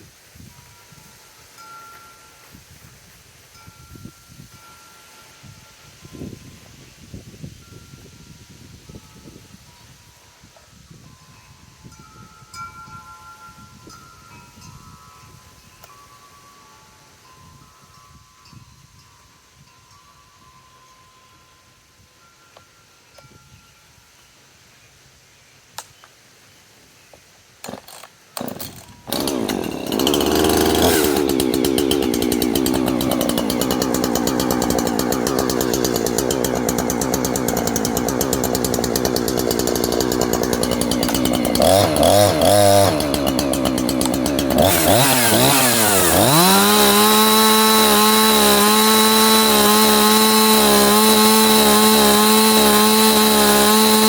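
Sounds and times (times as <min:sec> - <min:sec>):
starter clicks: 0:27.6 - 0:48.9
chainsaw running: 0:27.6 - 0:54.0.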